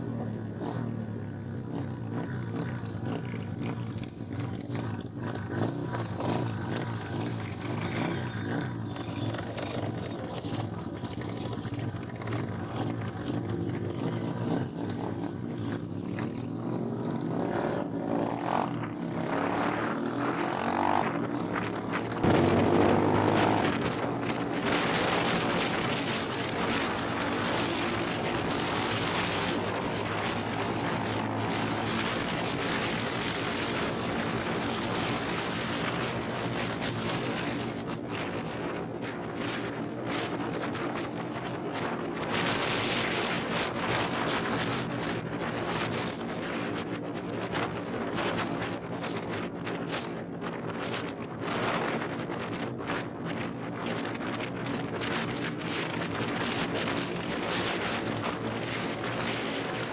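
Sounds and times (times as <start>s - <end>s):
motorcycle engine running: 0.0s - 59.9s
wind noise on microphone: 17.3s - 59.9s.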